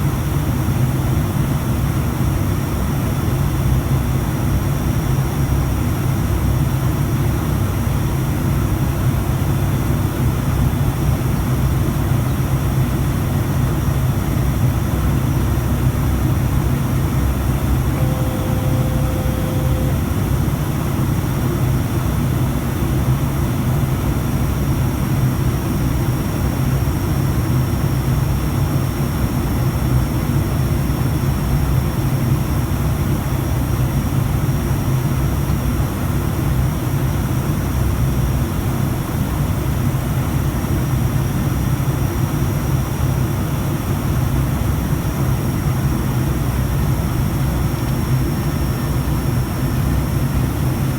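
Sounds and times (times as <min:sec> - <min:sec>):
turboprop engines droning: 0:05.4 - 0:29.4
faint tone: 0:17.2 - 0:21.6.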